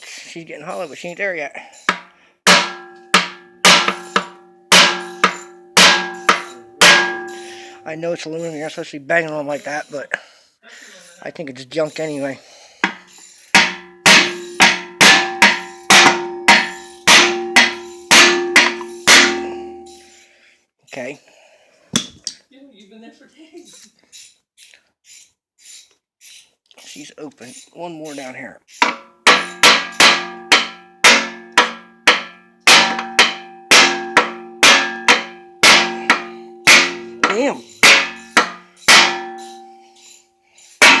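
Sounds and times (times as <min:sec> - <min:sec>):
hammer striking metal case: 0:01.9 - 0:07.8, 0:12.8 - 0:19.9, 0:28.8 - 0:39.8.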